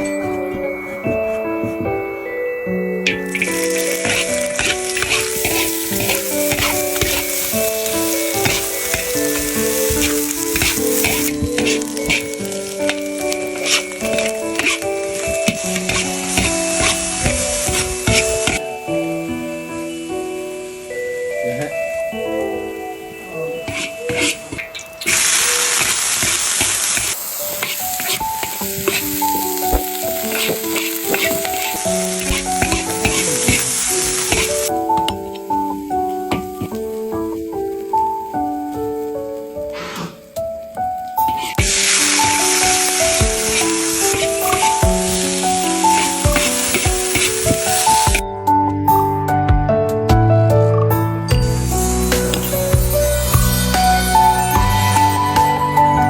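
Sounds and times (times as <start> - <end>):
background music: 0.0 - 56.0
food sizzling in a pan: 3.0 - 21.2, 23.6 - 40.3, 41.1 - 48.2
spatula scraping pan: 3.1 - 18.6, 23.7 - 34.7.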